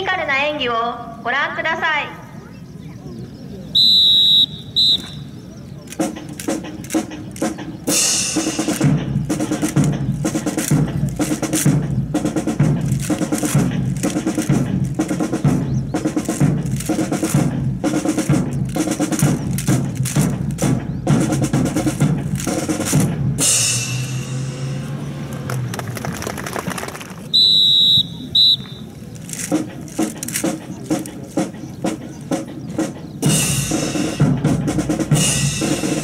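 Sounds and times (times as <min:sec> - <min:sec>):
snare and bass drum cadence: 0:05.9 - 0:24.4, 0:25.4 - 0:36.0
cymbal crash: 0:23.4 - 0:24.9.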